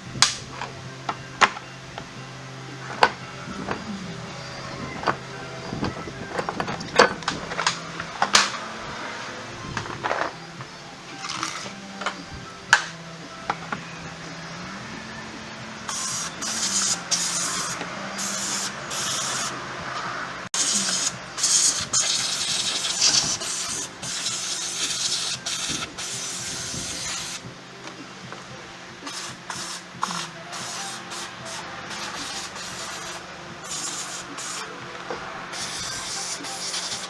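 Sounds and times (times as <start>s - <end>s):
hissing spray bursts: 15.9s - 19.6s, 20.5s - 27.5s, 29.0s - 34.7s, 35.5s - 37.0s.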